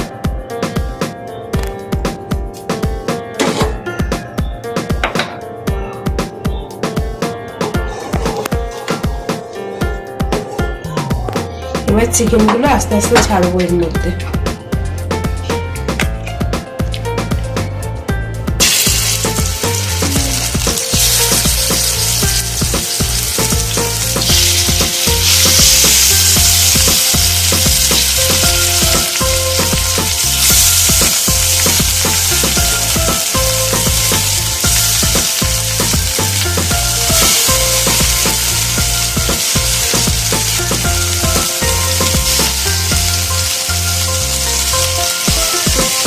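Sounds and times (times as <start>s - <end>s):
chicken sizzling in frying pan: 18.6s - 46.0s.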